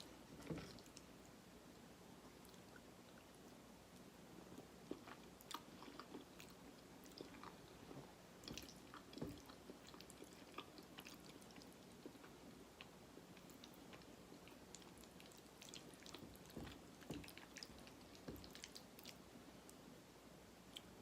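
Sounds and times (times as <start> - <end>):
chewing soft food: 0.0 - 1.4, 2.3 - 19.9.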